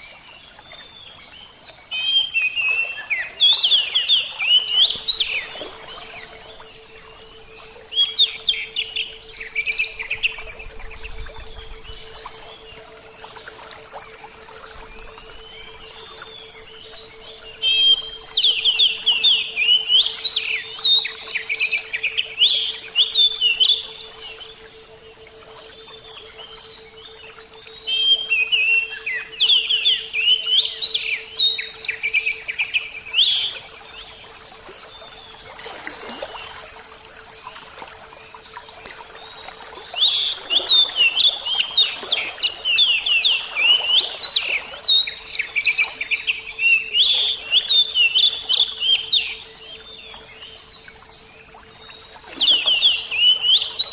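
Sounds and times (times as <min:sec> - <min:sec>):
songbird chirping rapidly: 0:07.6 - 0:12.4.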